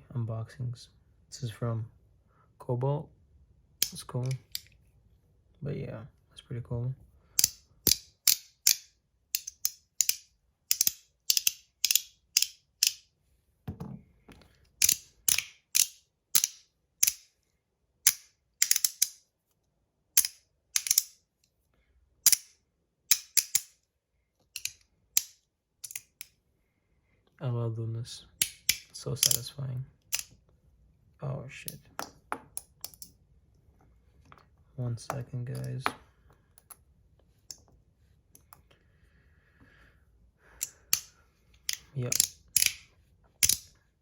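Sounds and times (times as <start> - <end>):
metal fidget toy clicking: 7.4 - 13.0, 18.0 - 19.2, 20.2 - 21.2, 41.7 - 43.7.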